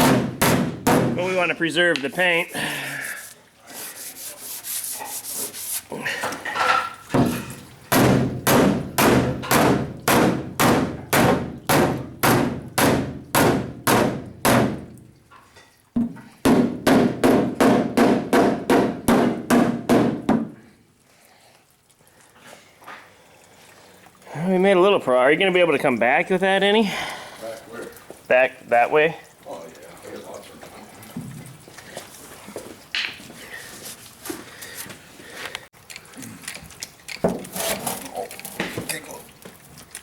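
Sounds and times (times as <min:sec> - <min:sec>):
hammer blows on wooden board: 0:00.0 - 0:01.2, 0:07.2 - 0:14.9, 0:16.0 - 0:20.6
rubbing and scraping on metal panel: 0:03.0 - 0:06.0.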